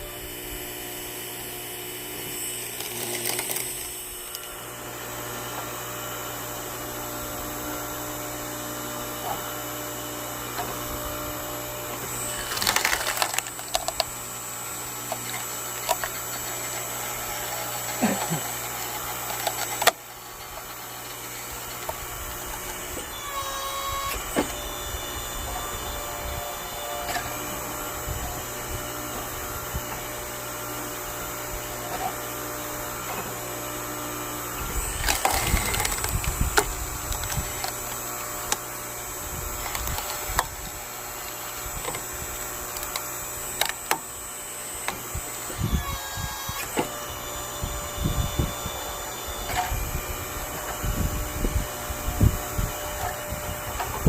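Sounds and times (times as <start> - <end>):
log splitter motor hum: 0.0 - 54.0
wood cracking and splintering: 2.4 - 4.5, 12.1 - 23.2, 34.7 - 44.1.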